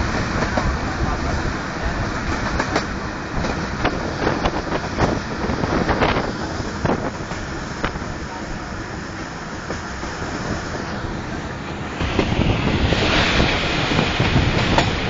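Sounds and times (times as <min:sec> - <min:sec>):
wheels clacking over rail joints: 0:00.0 - 0:08.1
train running rush: 0:00.0 - 0:15.0.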